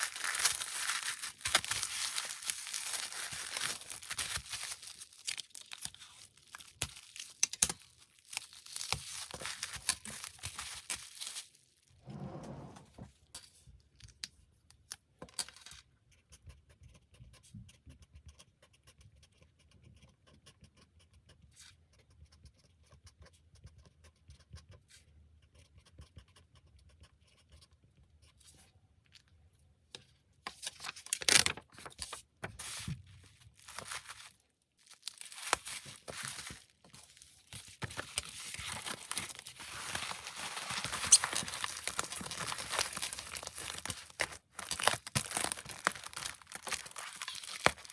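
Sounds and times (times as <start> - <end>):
packaging crinkling and tearing: 0.0 - 12.0, 30.6 - 47.9.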